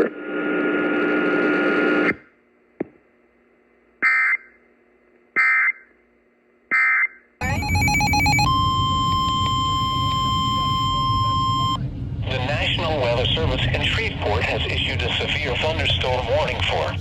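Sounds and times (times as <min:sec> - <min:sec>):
screeching data bursts: 0:07.4 - 0:11.8
steady alert tone: 0:07.4 - 0:11.8
warbling electronic tone: 0:07.4 - 0:14.0
low rumble: 0:07.4 - 0:17.0
static: 0:07.4 - 0:17.0.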